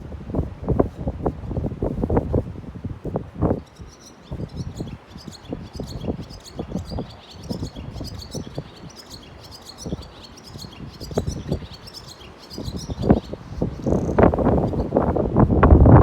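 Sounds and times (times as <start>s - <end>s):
wind on microphone: 0.0s - 16.0s
swallow twittering song: 3.4s - 15.0s.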